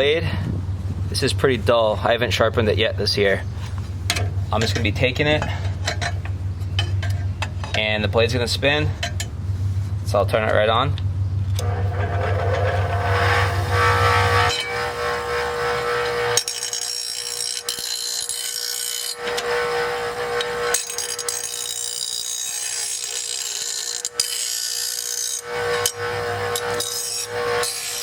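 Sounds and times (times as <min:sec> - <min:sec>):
blade rasping on grinding wheel: 0:11.6 - 0:28.0
electric grinder whining: 0:11.6 - 0:28.0.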